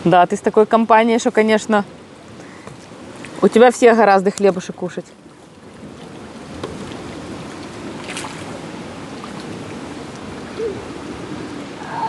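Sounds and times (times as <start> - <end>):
water splashing and rippling: 0.0 - 12.0.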